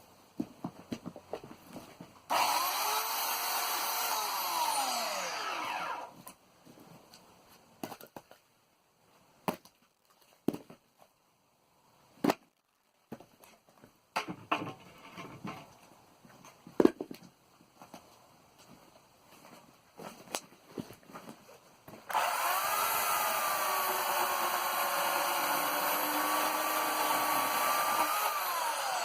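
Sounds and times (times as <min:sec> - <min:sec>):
electric chainsaw motor running: 0:02.3 - 0:06.1, 0:22.1 - 0:29.0.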